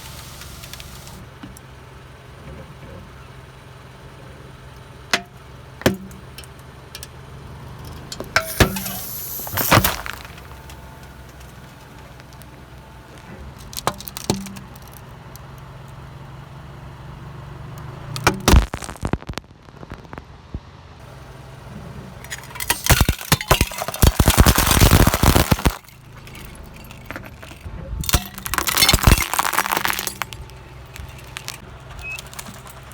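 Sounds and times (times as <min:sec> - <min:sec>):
low engine hum: 0:00.0 - 0:24.0, 0:25.8 - 0:32.9
objects cracking under tyres: 0:07.9 - 0:16.0, 0:18.1 - 0:20.7, 0:22.1 - 0:32.9.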